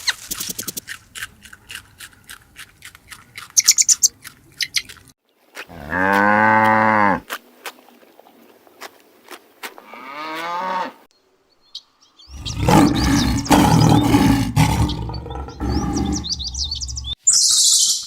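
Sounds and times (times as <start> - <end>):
cow mooing: 5.8 - 7.2, 12.3 - 16.9.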